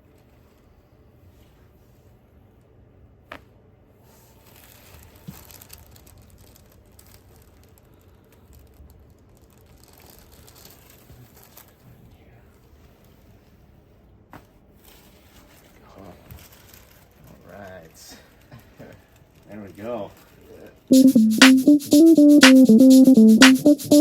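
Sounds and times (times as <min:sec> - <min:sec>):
rustling and crinkling: 0:14.8 - 0:17.2.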